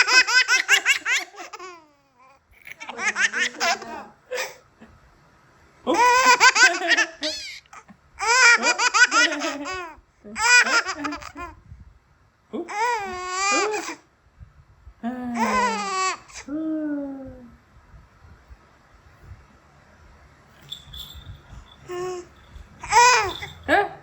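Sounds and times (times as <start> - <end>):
baby laughing: 0.0 - 2.0, 2.6 - 4.6, 5.9 - 11.6, 12.6 - 14.0, 15.4 - 16.5, 21.8 - 23.7.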